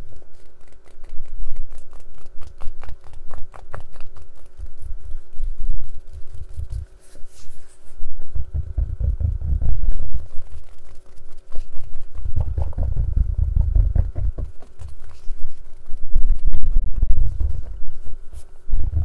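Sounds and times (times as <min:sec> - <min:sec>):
dull low thuds: 0:08.4 - 0:09.9, 0:12.2 - 0:14.6, 0:18.7 - 0:19.0.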